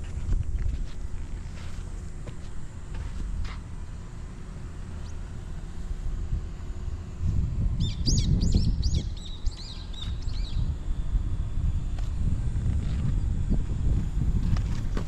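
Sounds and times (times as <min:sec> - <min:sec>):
steady low rumble: 0:00.0 - 0:15.0
small bird chirping: 0:07.8 - 0:10.8.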